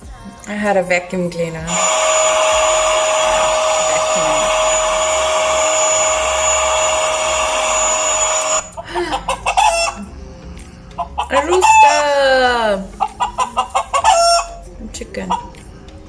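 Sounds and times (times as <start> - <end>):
vacuum cleaner running: 1.6 - 10.0.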